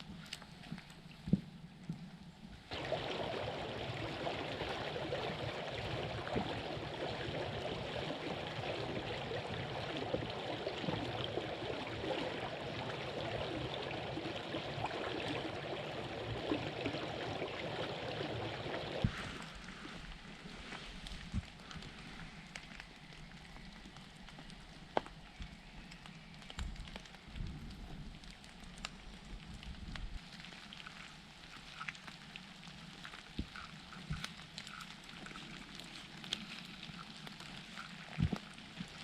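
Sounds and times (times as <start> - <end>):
running water: 0.0 - 39.0.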